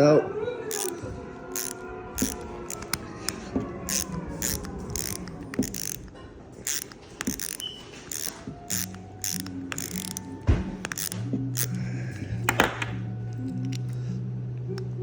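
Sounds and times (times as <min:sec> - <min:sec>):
screwdriver bit clicking and scraping: 0:00.7 - 0:11.8, 0:13.3 - 0:14.0.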